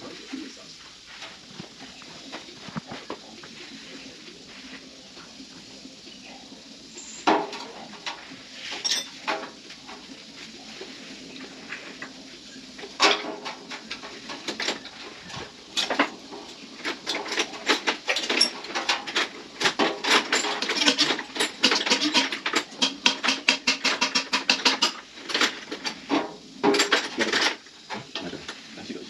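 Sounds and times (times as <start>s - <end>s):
metal tools clinking and tapping: 7.5s - 9.5s, 15.8s - 26.0s.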